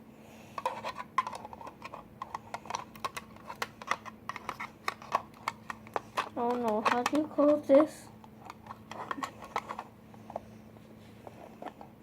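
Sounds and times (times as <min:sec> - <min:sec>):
small objects clicking and tapping: 0:00.6 - 0:09.9.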